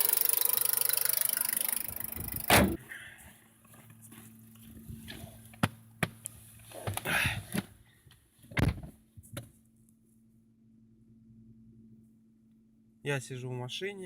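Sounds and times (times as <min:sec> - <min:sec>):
car door opening: 0:02.2 - 0:02.8
car door shutting with thud: 0:02.5 - 0:02.8.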